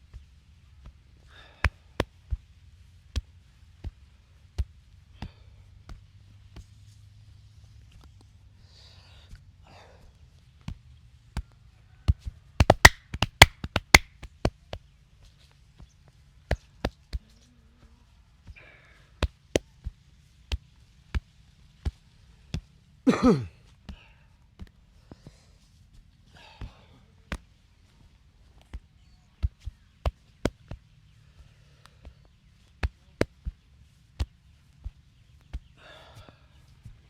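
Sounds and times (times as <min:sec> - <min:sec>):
hands slapping and tapping body: 0:11.4 - 0:15.4, 0:16.5 - 0:17.5, 0:19.2 - 0:23.2, 0:28.5 - 0:31.0, 0:32.3 - 0:33.6, 0:34.2 - 0:35.8.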